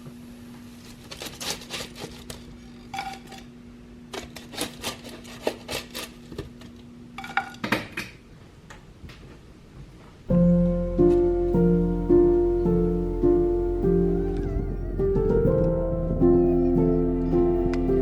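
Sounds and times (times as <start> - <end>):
dishes and cutlery clinking: 2.7 - 3.5
steady low hum: 10.2 - 18.0.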